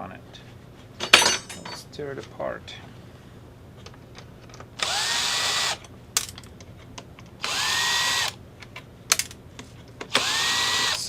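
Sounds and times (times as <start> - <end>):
electric drill motor whine: 4.8 - 5.8, 7.4 - 8.4, 10.1 - 11.0.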